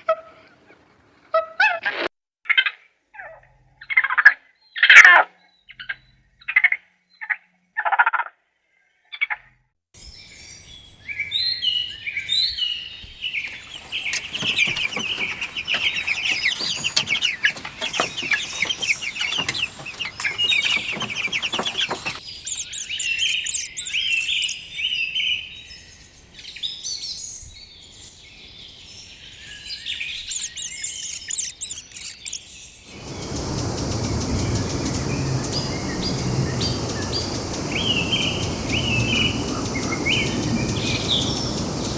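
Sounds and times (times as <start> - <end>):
birds chirping: 10.0 - 27.2, 27.8 - 41.9
high fast bird trills: 20.3 - 24.6, 30.3 - 34.9
steady background hiss: 33.0 - 41.9.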